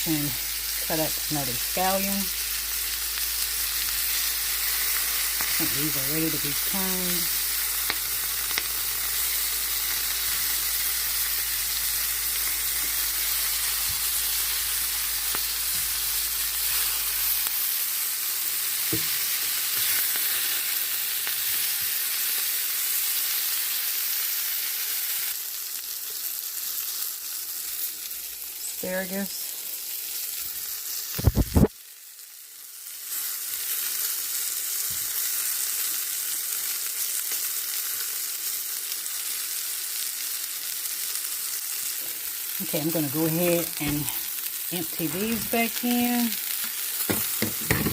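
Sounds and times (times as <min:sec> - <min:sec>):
fish sizzling in a pan: 0:00.0 - 0:47.9.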